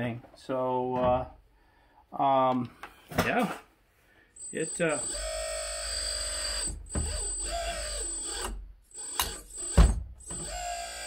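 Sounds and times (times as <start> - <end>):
hydraulic pump whining: 4.4 - 11.0.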